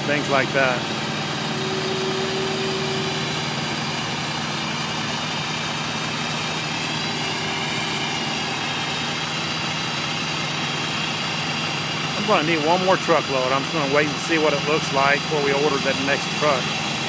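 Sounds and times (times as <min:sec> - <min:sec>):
diesel engine drone: 0:00.0 - 0:17.0
faint high tone: 0:01.6 - 0:03.4.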